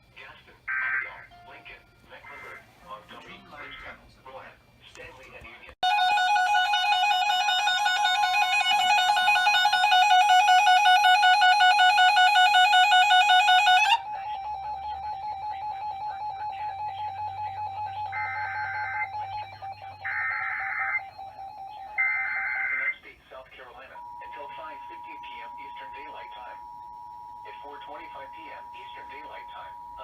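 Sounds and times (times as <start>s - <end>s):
pulsing electronic alert beep: 5.8s - 23.0s
screeching digital data bursts: 7.2s - 23.0s.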